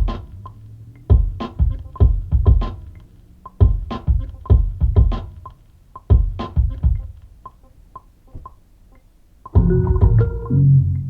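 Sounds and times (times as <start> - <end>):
sustained keyboard chords: 0.0 - 11.0
heavy bass: 9.6 - 11.0.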